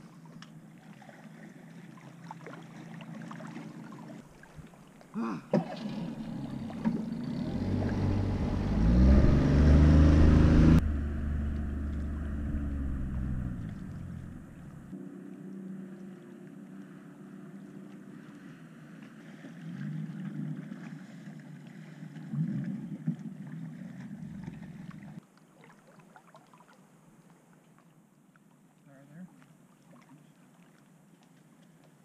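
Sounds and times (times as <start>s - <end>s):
motorboat engine revving: 5.6s - 16.0s.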